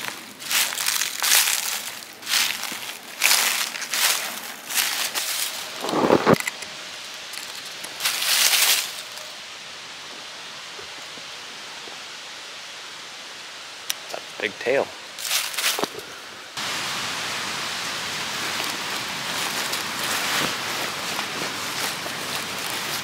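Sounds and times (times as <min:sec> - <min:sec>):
dry leaves rustling and crunching: 0:00.0 - 0:09.5, 0:15.2 - 0:16.0, 0:16.6 - 0:23.0
wind through woods: 0:00.0 - 0:23.0.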